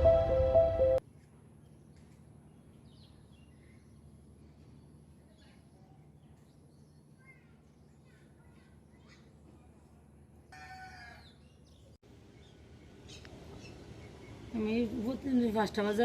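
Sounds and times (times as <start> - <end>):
background music: 0.0 - 1.0.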